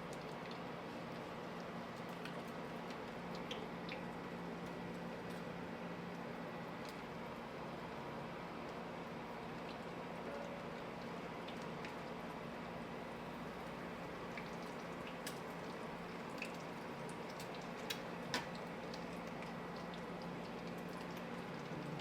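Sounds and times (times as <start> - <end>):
oil popping and crackling: 0.0 - 5.5, 13.5 - 22.0.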